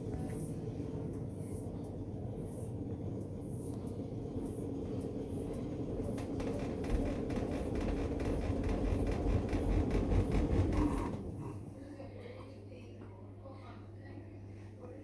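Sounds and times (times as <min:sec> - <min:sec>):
washing machine rumble and rattling: 0:02.0 - 0:11.8.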